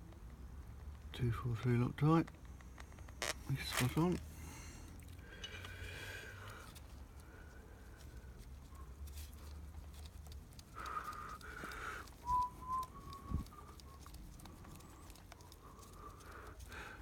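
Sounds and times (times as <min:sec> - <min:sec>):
high whistled notes: 0:12.2 - 0:13.4.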